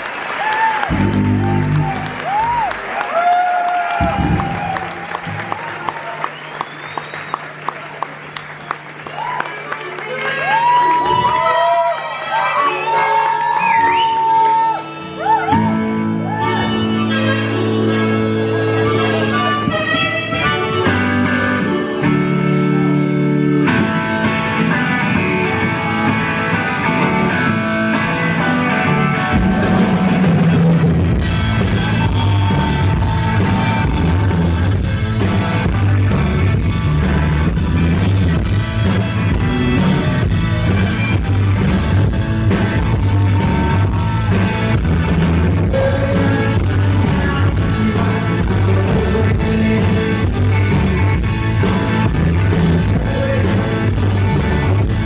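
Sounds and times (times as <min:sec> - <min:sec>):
electric guitar: 0:00.0 - 0:55.0
rock band playing live: 0:00.0 - 0:55.0
drums: 0:00.2 - 0:09.8, 0:10.4 - 0:55.0
person singing: 0:45.4 - 0:55.0.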